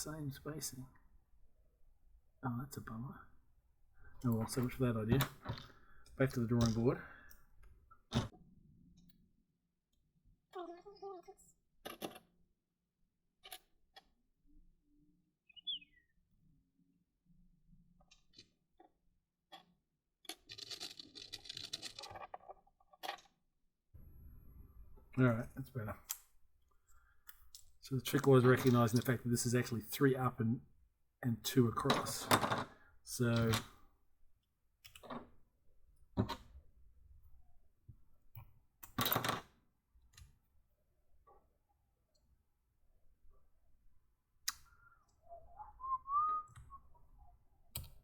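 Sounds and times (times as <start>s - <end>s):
plastic pieces rattling: 20.3s - 23.3s.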